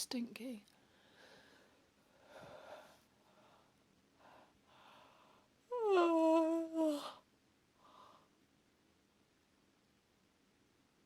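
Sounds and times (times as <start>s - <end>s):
soft breaths: 0.7s - 5.7s, 6.8s - 8.6s
woman yawning: 5.7s - 7.2s.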